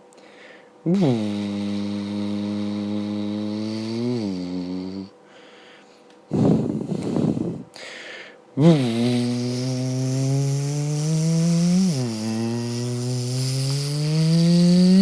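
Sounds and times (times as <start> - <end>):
person imitating car engine: 0.9 - 5.1, 8.6 - 15.0.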